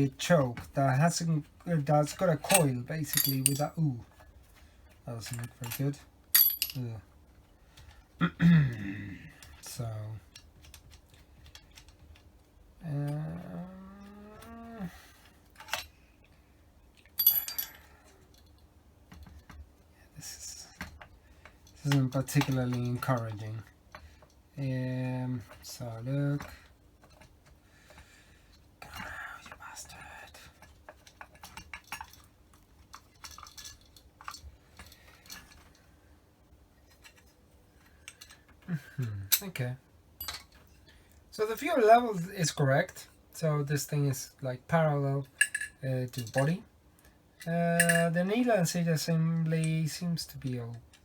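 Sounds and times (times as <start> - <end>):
clinks of small metal parts: 2.0 - 3.8, 5.2 - 7.0, 17.0 - 18.6, 30.6 - 32.3, 32.9 - 35.8, 38.0 - 39.4, 40.2 - 40.8, 45.3 - 46.5, 47.8 - 48.2
metal parts clinking on bench: 2.1 - 3.8, 5.2 - 6.9, 17.2 - 17.9, 40.2 - 40.6, 45.4 - 46.5, 47.8 - 48.2
man making a doubtful hmm: 8.2 - 9.3.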